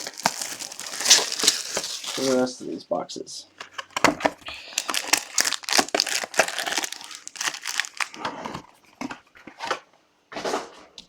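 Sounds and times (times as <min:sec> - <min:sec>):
card packaging crinkling: 0:00.0 - 0:02.6, 0:03.6 - 0:09.6.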